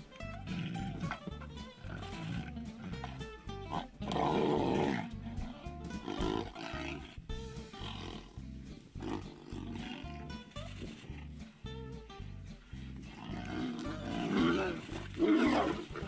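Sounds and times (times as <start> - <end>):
music with steady beat: 0.0 - 16.0
animal roar: 0.3 - 7.2, 9.0 - 10.4, 13.1 - 16.0
animal growls: 0.3 - 8.4, 9.0 - 11.4, 13.0 - 16.0.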